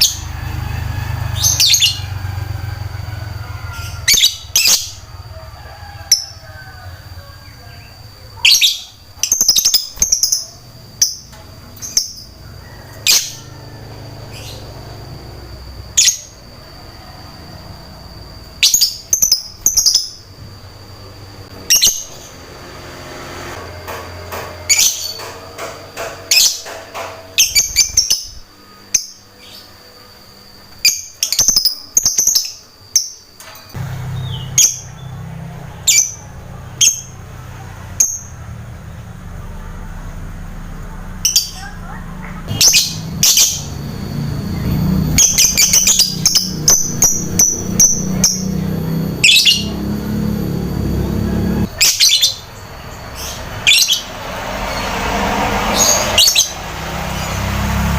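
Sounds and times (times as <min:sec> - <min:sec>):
bird shrill high chirps: 0:03.4 - 0:05.2, 0:41.3 - 0:54.1
steady high tone: 0:39.2 - 0:57.0.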